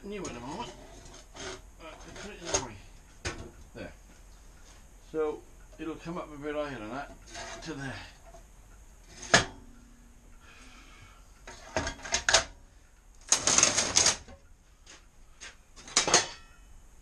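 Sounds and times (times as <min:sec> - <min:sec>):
hard parts scraping: 0:00.0 - 0:03.7, 0:06.8 - 0:09.8.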